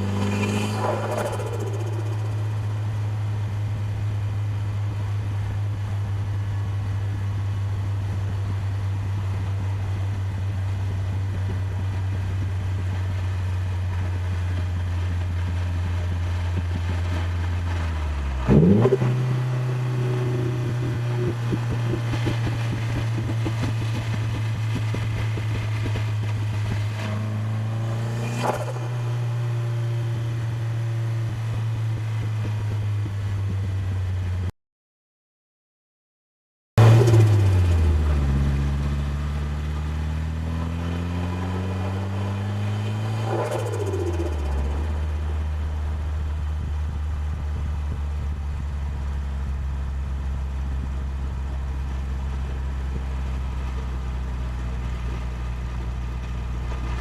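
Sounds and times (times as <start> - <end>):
engine revs bursting: 0.0 - 5.5, 15.3 - 32.0, 36.8 - 48.0
car engine droning: 0.0 - 34.5, 36.8 - 57.0.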